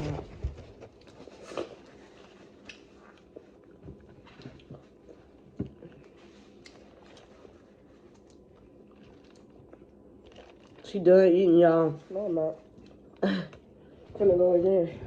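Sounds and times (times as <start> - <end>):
wet chewing: 0.8 - 11.5, 12.5 - 14.0.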